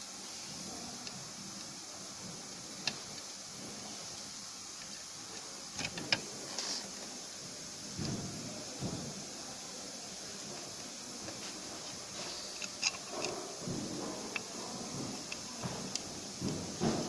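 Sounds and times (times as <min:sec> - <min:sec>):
steady hiss: 0:00.0 - 0:17.0
light clicks of small parts: 0:12.1 - 0:17.0.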